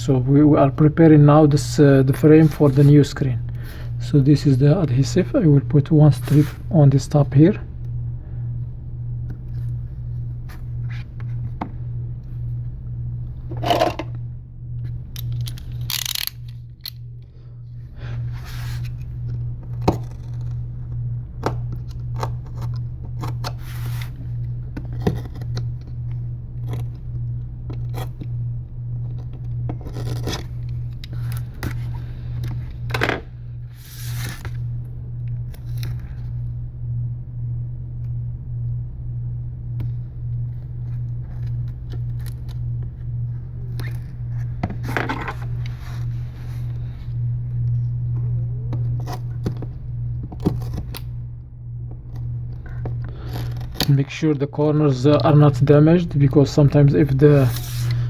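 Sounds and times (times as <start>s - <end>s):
steady low hum: 0.0s - 58.0s
tape scraping and rustling: 21.9s - 25.7s, 33.7s - 34.6s, 57.1s - 58.0s.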